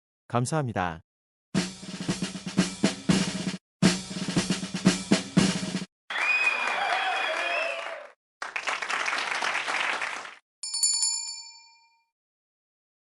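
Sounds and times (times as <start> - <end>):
applause-like noise: 6.1 - 10.4
bright bell ding: 10.6 - 12.1.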